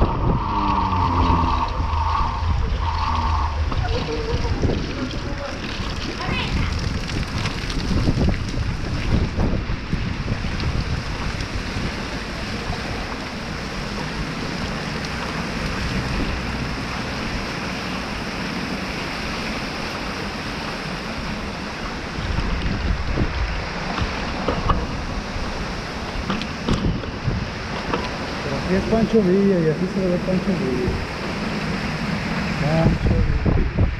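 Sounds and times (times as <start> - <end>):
storm rushing noise: 0.0 - 33.9
wind gusts buffeting microphone: 0.0 - 33.9.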